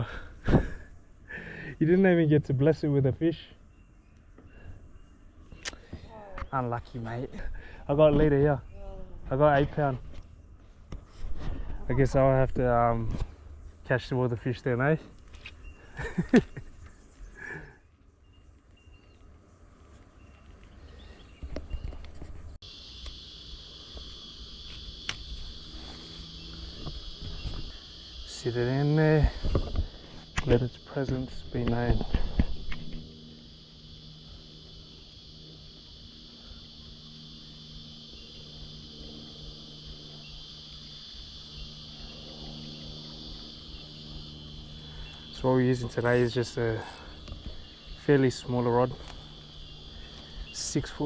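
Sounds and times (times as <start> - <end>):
cicada drone: 0.0 - 51.0
low steady hum: 0.0 - 51.0
brush snapping: 5.6 - 5.8
sharp snap: 5.6 - 5.8.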